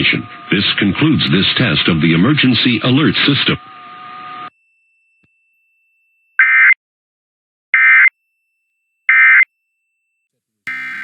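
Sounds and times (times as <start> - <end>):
short bursts of digital data tones: 10.7 - 11.0.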